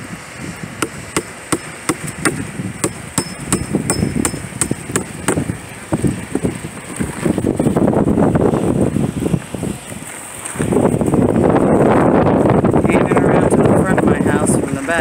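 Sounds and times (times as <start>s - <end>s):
outdoor wind noise: 0.0s - 15.0s
hammering knocks: 0.8s - 5.5s.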